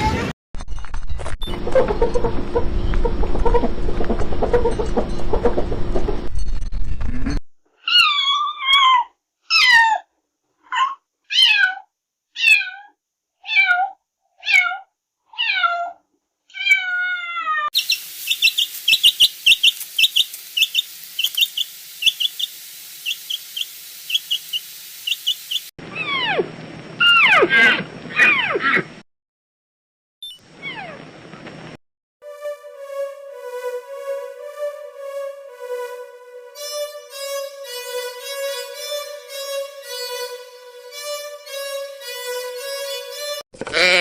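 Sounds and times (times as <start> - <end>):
cat meowing: 10.8 - 17.7
rapid high chirps: 17.8 - 25.7, 36.6 - 43.4
steady hiss: 17.8 - 25.7
high gliding cheeps: 32.3 - 43.4.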